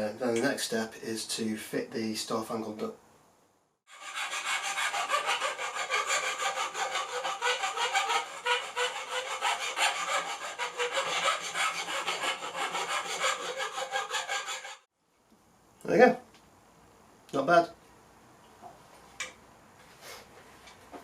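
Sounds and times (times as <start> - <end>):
hand file rasping on metal tube: 3.9 - 14.9.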